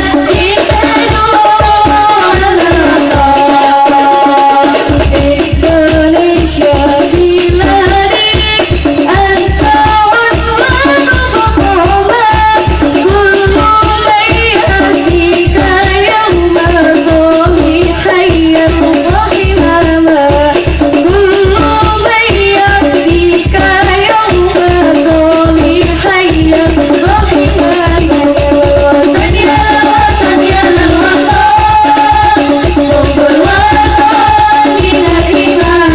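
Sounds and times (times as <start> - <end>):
frame drums playing rhythm: 0.0 - 35.9
person singing devotional song: 0.0 - 35.9.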